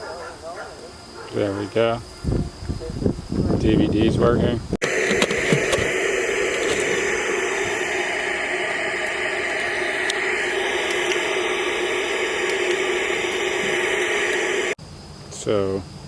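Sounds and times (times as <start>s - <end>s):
static hiss from tv speaker: 4.8s - 14.8s.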